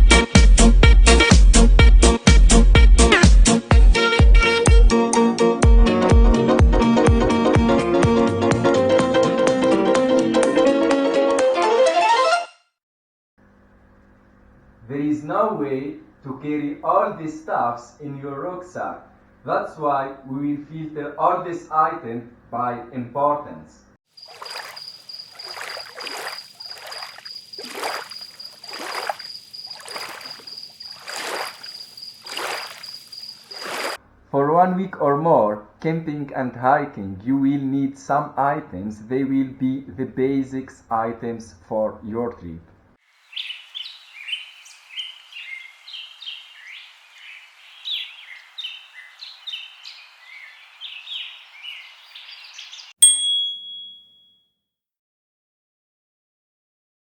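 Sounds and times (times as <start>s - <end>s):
birds chirping and twittering: 24.2s - 34.0s, 43.3s - 53.0s
water splashing in surges: 24.2s - 34.0s
bell-like ding: 53.0s - 54.4s
thin high-pitched tone: 53.0s - 54.4s.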